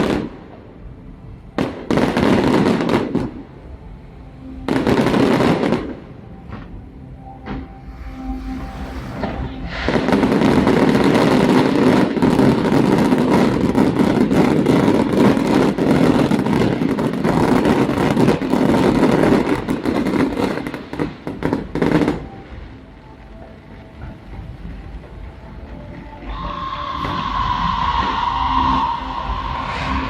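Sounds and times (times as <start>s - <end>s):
fireworks bursting and crackling: 7.4s - 22.6s, 25.9s - 30.0s.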